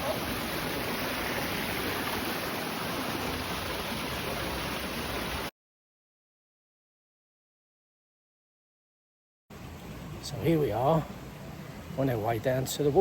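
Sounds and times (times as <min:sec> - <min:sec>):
running water rushing: 0:00.0 - 0:05.5.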